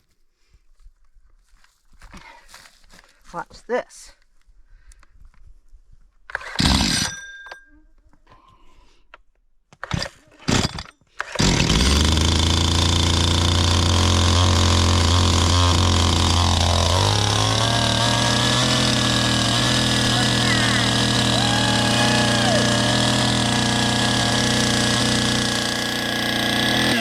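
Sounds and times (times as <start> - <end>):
chainsaw recoil pull-start: 6.3 - 7.2, 9.8 - 27.0
chainsaw idling: 11.4 - 27.0.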